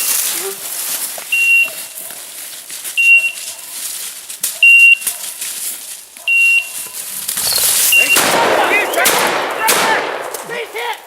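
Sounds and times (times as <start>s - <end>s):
high electronic beeps: 1.3s - 2.0s, 3.0s - 3.4s, 4.6s - 5.0s, 6.3s - 9.1s.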